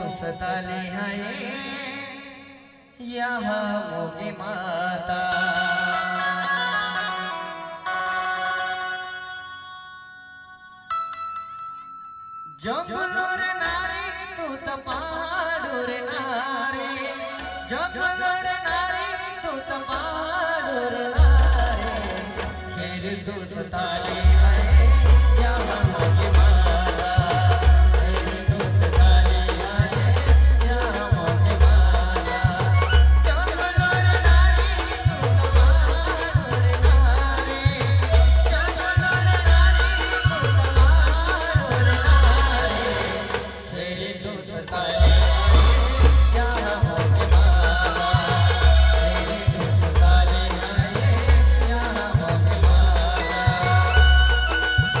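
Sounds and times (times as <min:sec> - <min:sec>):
band playing a melody: 0:16.5 - 0:43.9, 0:44.6 - 0:55.0
rattling percussion: 0:23.4 - 0:43.7, 0:44.7 - 0:55.0
booming bass drum beat: 0:24.2 - 0:42.7, 0:45.0 - 0:55.0.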